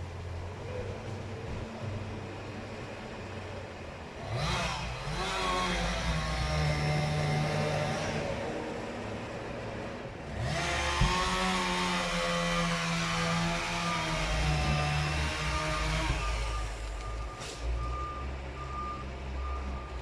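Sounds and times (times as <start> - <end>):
engine revving: 4.2 - 8.8, 10.3 - 20.0.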